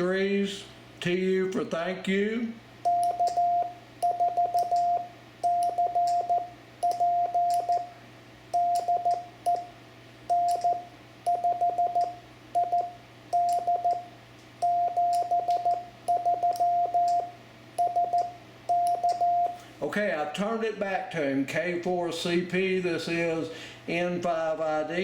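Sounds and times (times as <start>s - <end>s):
morse code beeps: 2.8s - 8.0s, 8.6s - 9.7s, 10.3s - 19.6s
faint keying clicks: 10.4s - 10.8s.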